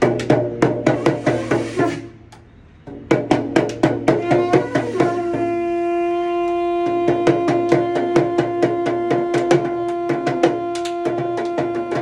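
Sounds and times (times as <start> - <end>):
conch shell long blown note: 0.9 - 2.2, 4.1 - 12.0.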